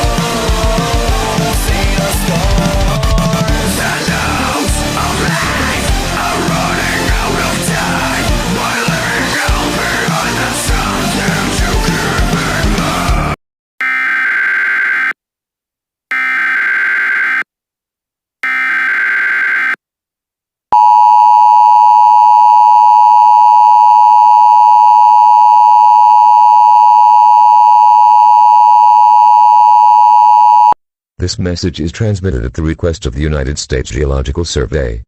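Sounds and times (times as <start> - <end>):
loud steady attention tone: 20.8 - 30.8.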